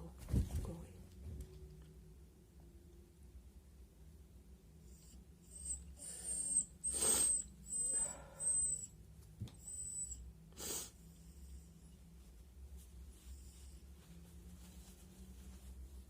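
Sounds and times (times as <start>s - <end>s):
nose sniffing with whistle: 6.0s - 8.8s, 9.7s - 11.0s.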